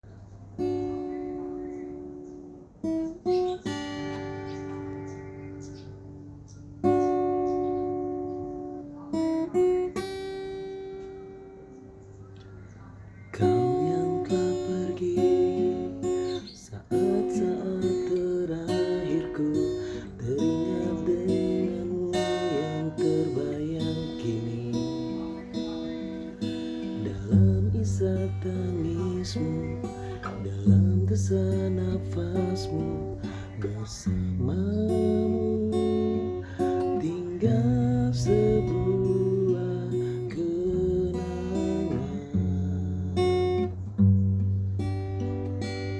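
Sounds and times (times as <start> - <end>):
acoustic guitar strumming: 0.0 - 45.9.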